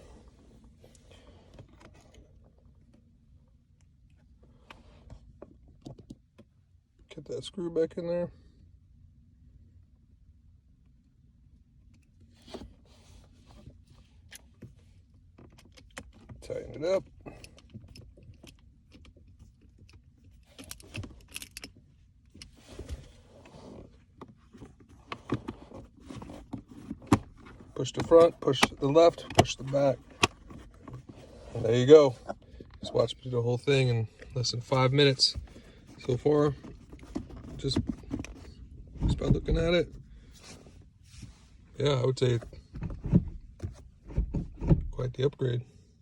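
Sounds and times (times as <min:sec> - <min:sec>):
light metallic clicks and rattles: 0:15.3 - 0:22.6
shift knob clicks and knocks: 0:25.1 - 0:33.1.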